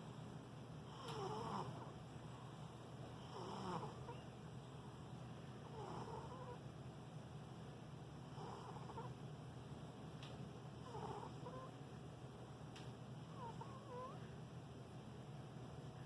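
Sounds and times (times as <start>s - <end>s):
cat snoring faintly: 0.8s - 4.2s, 5.6s - 6.6s, 8.2s - 9.2s, 10.8s - 11.8s, 13.3s - 14.3s.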